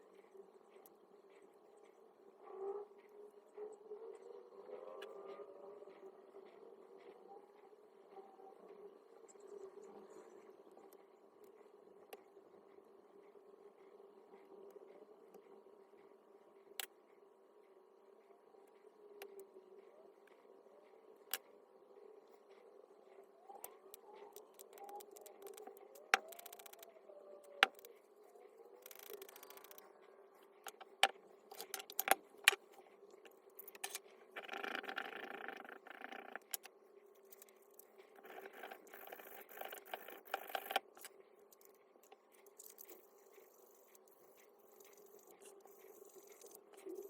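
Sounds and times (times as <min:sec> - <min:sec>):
sharp clicks and knocks of hard parts: 0:30.6 - 0:32.6.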